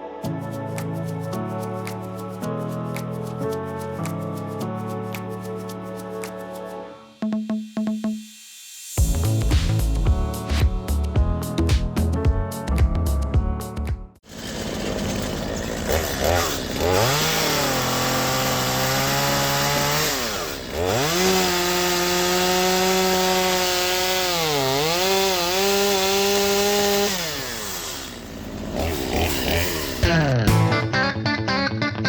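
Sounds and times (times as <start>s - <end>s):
chainsaw revving: 14.2s - 30.7s.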